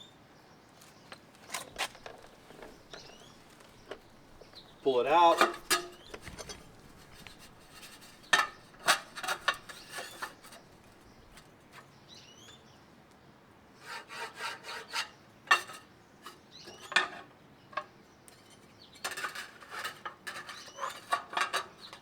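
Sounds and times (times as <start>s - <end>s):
thin sheet metal scraping and knocking: 1.5s - 11.4s.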